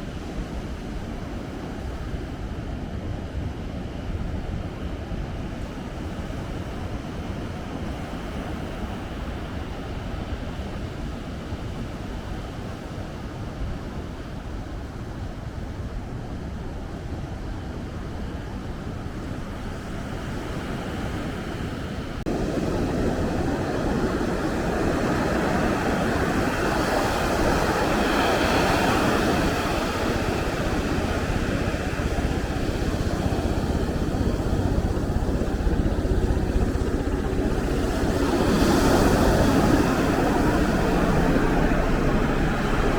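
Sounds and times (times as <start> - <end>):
wind on microphone: 0.0 - 42.9
ocean surf rushing: 20.1 - 42.9.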